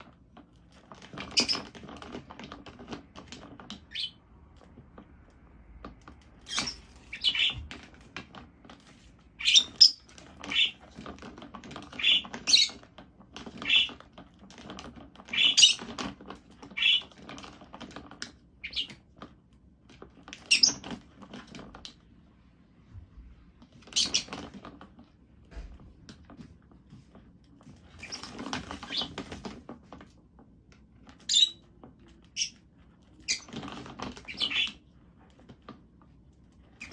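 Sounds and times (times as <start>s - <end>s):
parrot chirping: 1.3s - 1.7s, 3.9s - 4.2s, 6.4s - 7.6s, 9.4s - 10.8s, 11.9s - 12.8s, 15.3s - 15.8s, 18.6s - 18.9s, 31.2s - 31.6s, 34.2s - 34.8s.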